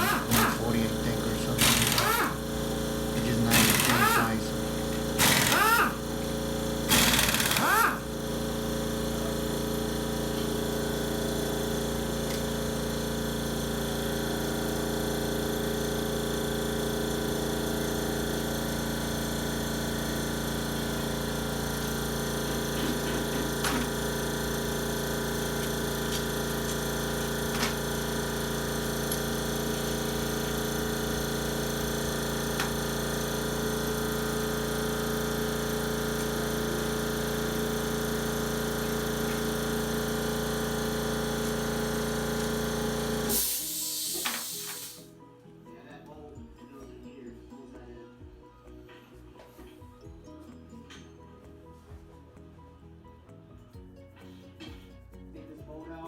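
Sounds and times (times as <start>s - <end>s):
air compressor humming: 0.0s - 45.2s.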